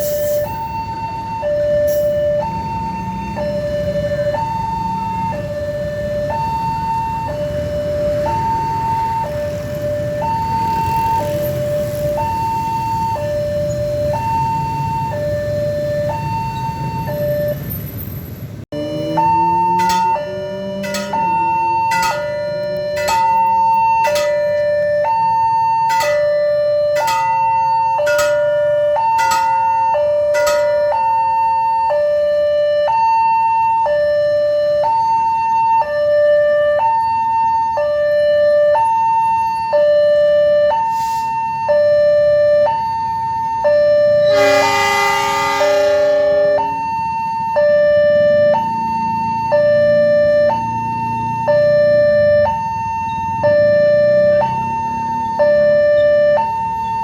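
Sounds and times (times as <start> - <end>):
two-tone warning siren: 0.0 - 57.0
train horn blast: 19.1 - 23.3, 44.2 - 46.9
sharp strikes: 19.8 - 24.8, 25.9 - 31.1.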